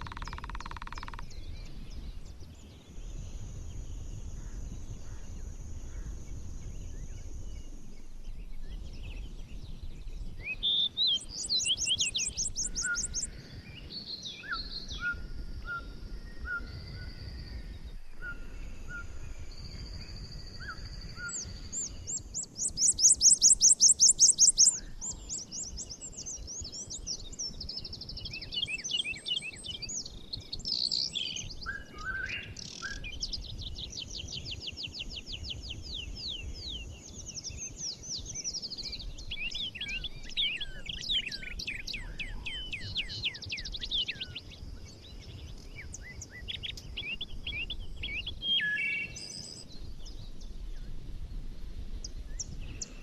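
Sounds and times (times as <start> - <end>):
fast bird trill: 0.0 - 1.4, 10.5 - 13.3, 21.2 - 27.1
songbirds singing and chirping: 0.0 - 53.0.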